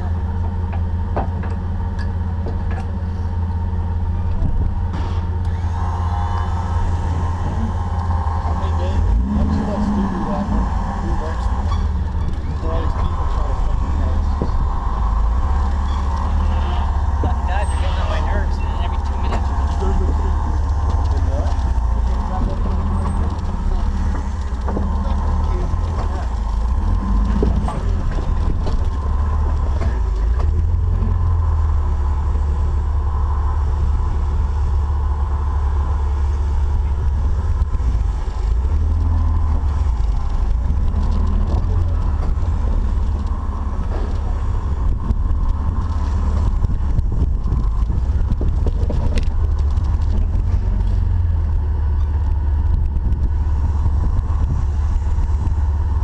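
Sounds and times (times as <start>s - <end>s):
off-road vehicle engine rumbling: 0.0s - 56.0s.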